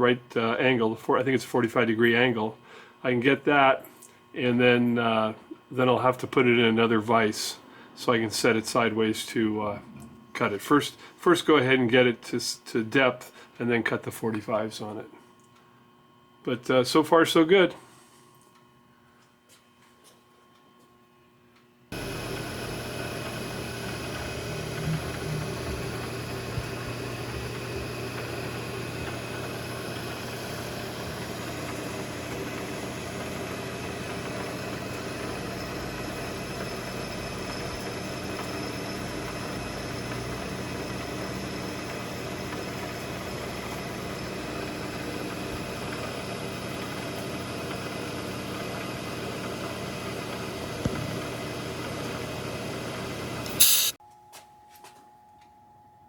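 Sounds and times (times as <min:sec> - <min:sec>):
milling machine cutting metal: 0:22.0 - 0:54.0.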